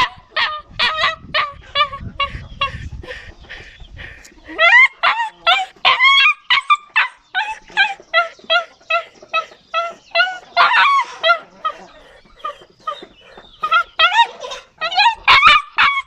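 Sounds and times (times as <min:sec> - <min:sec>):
dog whining: 0:04.6 - 0:08.6, 0:12.4 - 0:16.0.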